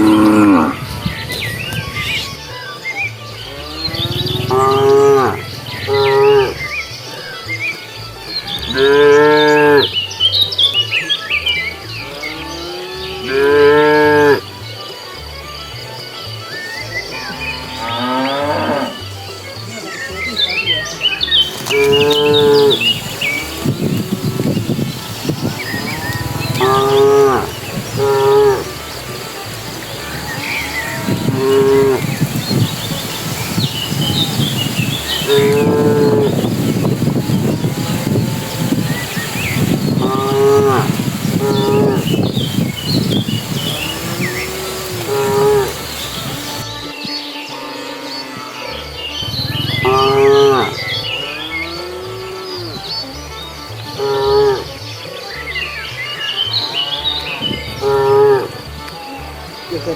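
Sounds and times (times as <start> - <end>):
cows mooing: 0.0 - 1.0, 3.4 - 6.7, 8.6 - 10.0, 12.0 - 14.4, 17.0 - 19.2, 20.2 - 46.7, 47.5 - 52.8, 53.9 - 54.8, 56.5 - 58.7
birds chirping: 0.0 - 59.9.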